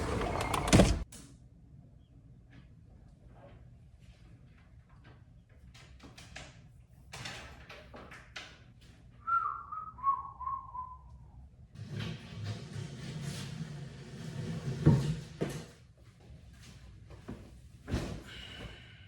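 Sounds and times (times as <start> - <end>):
person whistling: 9.2 - 11.4.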